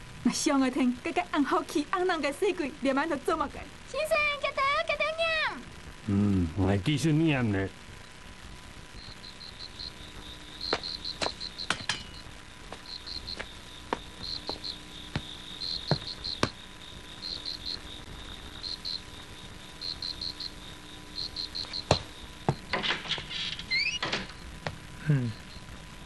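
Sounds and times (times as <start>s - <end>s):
cricket chirping: 8.9s - 26.0s.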